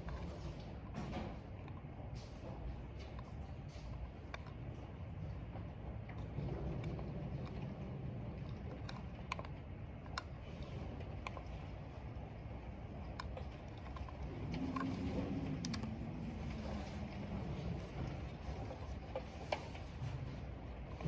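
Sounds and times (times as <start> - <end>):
wind and rain rumble: 0.0 - 21.0.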